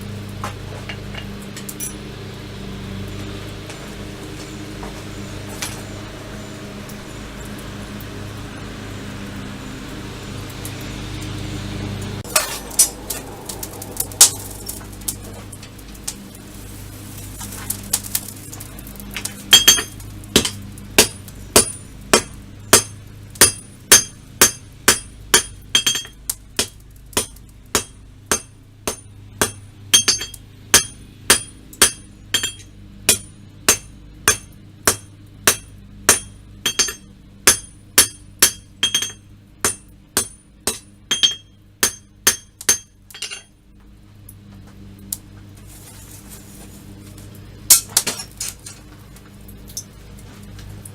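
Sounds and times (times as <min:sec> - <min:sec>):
low steady hum: 0:00.0 - 0:50.9
hammer striking steel on anvil: 0:19.5 - 0:43.6.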